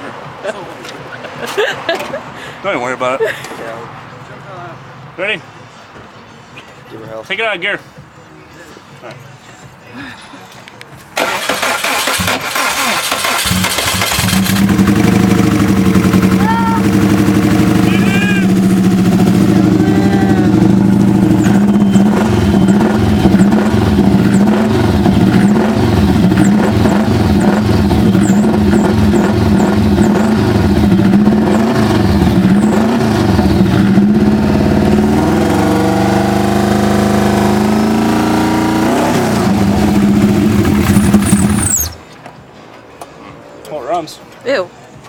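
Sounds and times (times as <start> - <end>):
car engine revving: 11.2 - 42.0.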